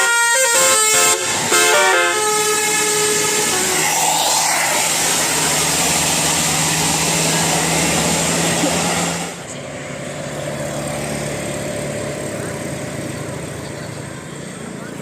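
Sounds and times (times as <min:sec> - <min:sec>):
bus melody horn: 0:00.0 - 0:03.9
bus engine humming: 0:00.0 - 0:15.0.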